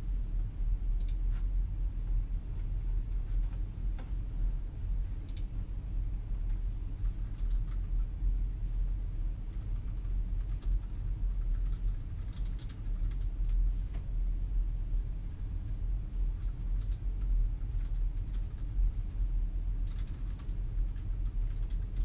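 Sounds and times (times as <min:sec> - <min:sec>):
steady low hum: 0:00.0 - 0:22.0
keyboard typing: 0:07.0 - 0:08.1, 0:09.5 - 0:13.6, 0:17.6 - 0:18.7, 0:19.8 - 0:22.0.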